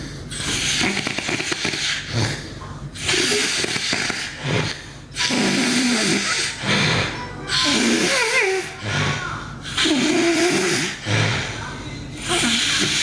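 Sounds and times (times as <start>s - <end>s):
girl snoring loudly: 3.0s - 11.6s, 12.2s - 13.0s.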